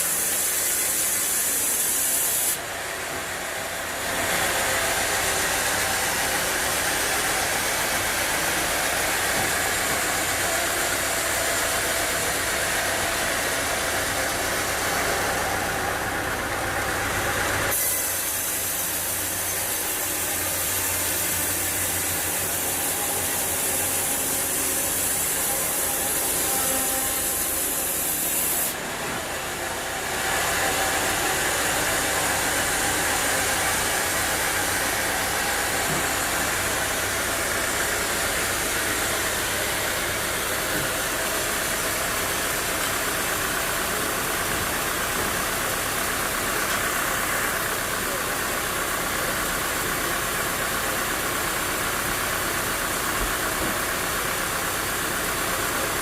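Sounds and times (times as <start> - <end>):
sawmill machinery hiss: 0.0 - 56.0.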